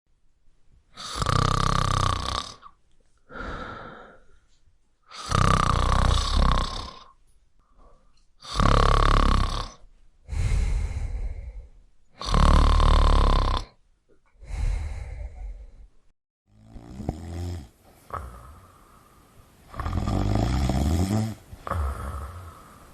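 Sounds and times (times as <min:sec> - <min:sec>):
loud snoring: 0:01.0 - 0:02.7, 0:05.1 - 0:07.1, 0:08.4 - 0:11.6, 0:12.2 - 0:13.8, 0:16.5 - 0:19.0, 0:19.7 - 0:22.9.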